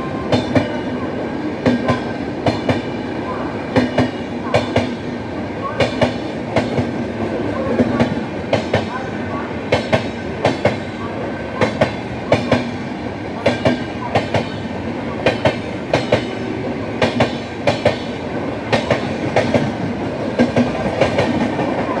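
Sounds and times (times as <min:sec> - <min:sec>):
train rumble: 0:00.0 - 0:22.0
train wheels clickety-clack: 0:00.2 - 0:00.9, 0:01.6 - 0:02.9, 0:03.7 - 0:05.0, 0:05.8 - 0:07.0, 0:07.7 - 0:09.0, 0:09.7 - 0:11.0, 0:11.6 - 0:12.8, 0:13.4 - 0:14.6, 0:15.2 - 0:22.0.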